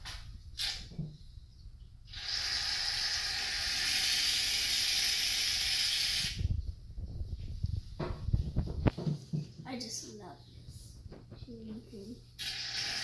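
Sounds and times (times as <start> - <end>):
aerosol can spraying foam: 2.1 - 6.4, 12.4 - 13.0.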